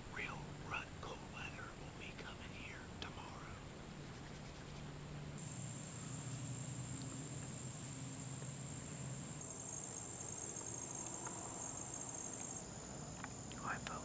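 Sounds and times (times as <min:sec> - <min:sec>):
insects trilling: 0:05.4 - 0:14.0
lower insect trill: 0:05.4 - 0:14.0.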